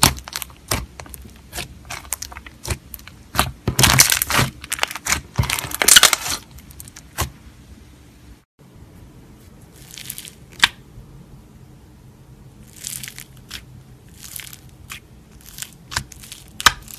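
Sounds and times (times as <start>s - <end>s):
slime crackling and popping: 0.0s - 7.3s, 12.6s - 16.9s
slime squishing: 0.0s - 7.4s, 9.6s - 10.8s, 12.6s - 16.9s.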